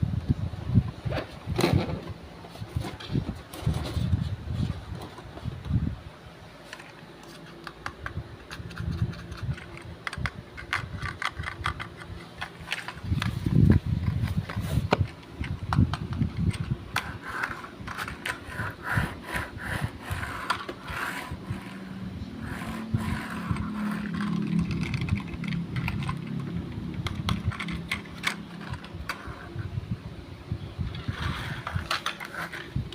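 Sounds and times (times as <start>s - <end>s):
low steady hum: 0.0s - 32.9s
clicks taps and scrapes of objects: 6.6s - 18.8s, 20.1s - 29.6s, 30.9s - 32.9s.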